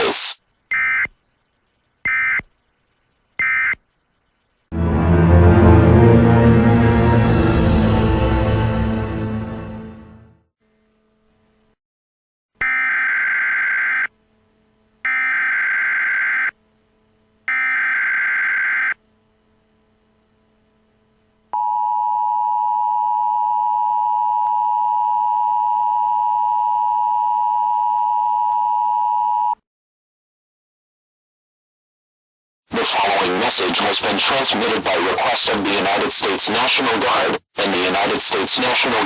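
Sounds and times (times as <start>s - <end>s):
digital data tone bursts: 0.0s - 4.5s.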